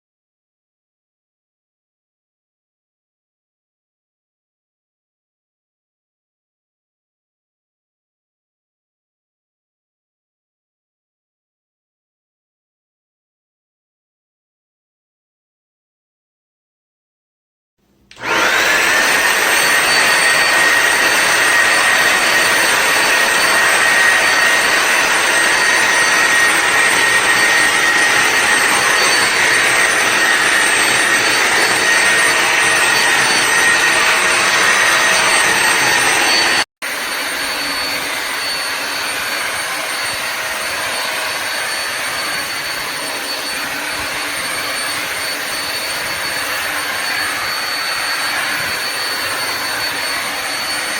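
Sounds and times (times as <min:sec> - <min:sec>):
vacuum motor whining: 0:18.0 - 0:50.9.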